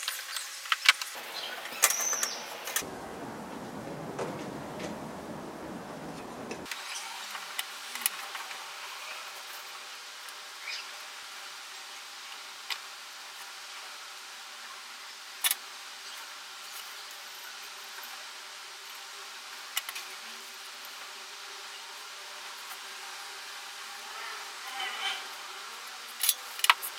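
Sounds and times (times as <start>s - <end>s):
faint hiss: 0.0s - 26.9s
low hum: 1.2s - 6.7s.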